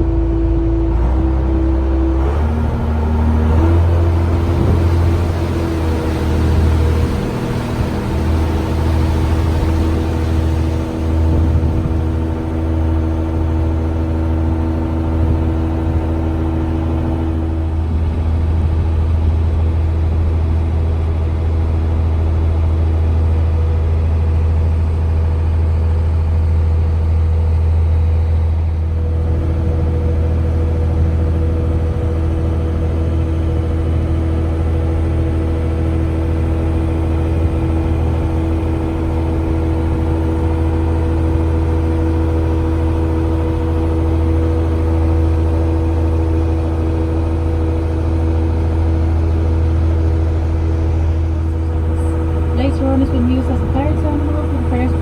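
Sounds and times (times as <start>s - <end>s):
boat engine droning: 0.0s - 55.0s.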